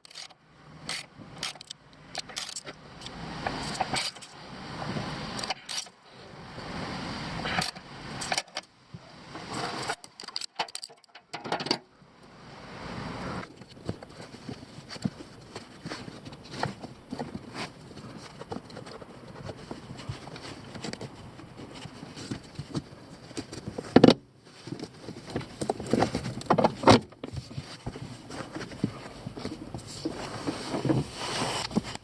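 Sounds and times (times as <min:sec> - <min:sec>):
hard objects clicking and knocking: 0:00.0 - 0:02.8, 0:09.7 - 0:11.8.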